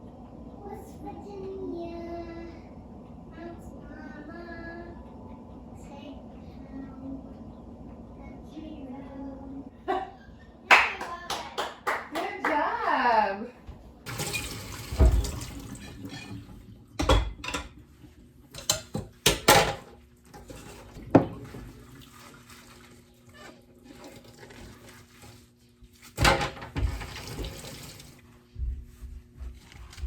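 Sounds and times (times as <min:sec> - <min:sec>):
running water: 0:14.1 - 0:16.8, 0:20.7 - 0:25.5, 0:26.8 - 0:28.3.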